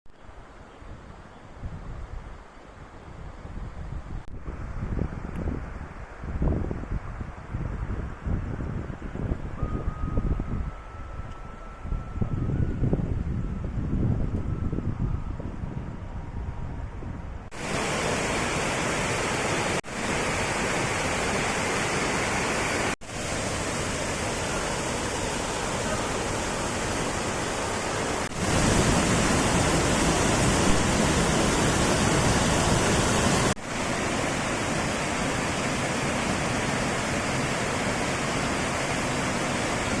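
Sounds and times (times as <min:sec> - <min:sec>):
waterfall rushing: 0:17.5 - 0:40.0.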